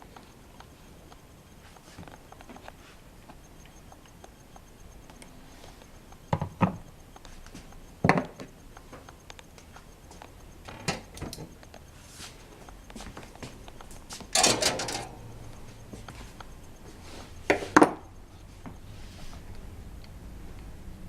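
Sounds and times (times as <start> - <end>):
knocks of hard objects: 6.3 - 6.8.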